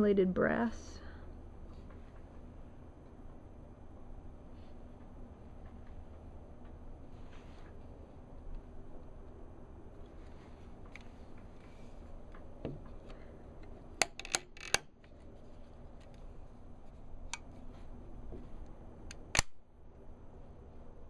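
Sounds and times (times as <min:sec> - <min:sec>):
pistol lock clicking: 0:14.0 - 0:14.9, 0:19.1 - 0:19.6.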